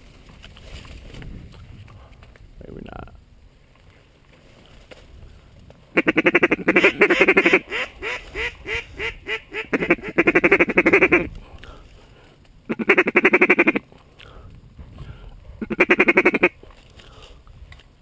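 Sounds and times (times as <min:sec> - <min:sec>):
duck call falling quacks: 0:06.0 - 0:11.3, 0:12.7 - 0:13.8, 0:15.6 - 0:16.6
duck call feed chatter: 0:06.0 - 0:11.3, 0:12.7 - 0:13.8, 0:15.6 - 0:16.6.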